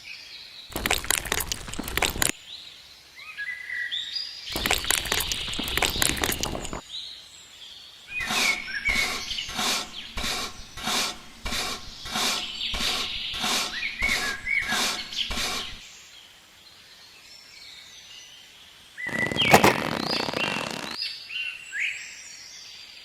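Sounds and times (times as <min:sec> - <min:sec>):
birds chirping: 0:04.5 - 0:06.8, 0:08.1 - 0:15.8
rhythmic scraping strokes: 0:08.2 - 0:15.8, 0:19.2 - 0:20.2.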